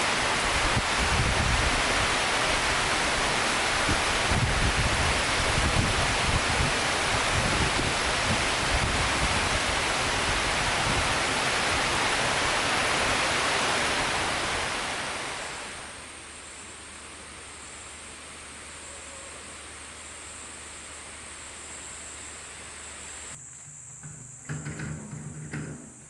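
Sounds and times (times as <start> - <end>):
heavy rain hiss: 0.0 - 26.0.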